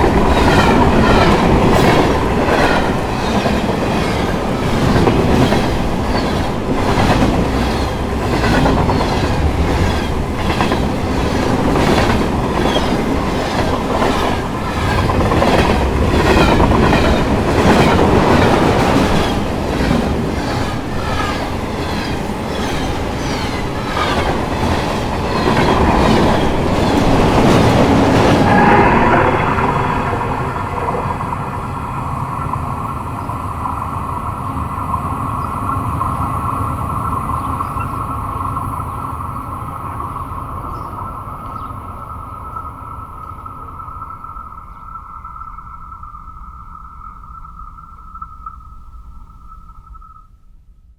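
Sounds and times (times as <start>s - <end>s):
wheels clicking over rail joints: 0.0s - 28.4s
steady train hum: 0.0s - 50.2s
train rumbling past: 0.0s - 50.2s.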